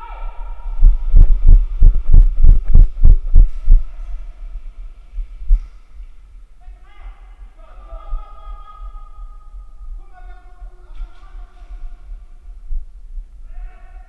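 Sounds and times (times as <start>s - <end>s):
heavy low thumps: 0.0s - 6.5s, 11.8s - 13.5s.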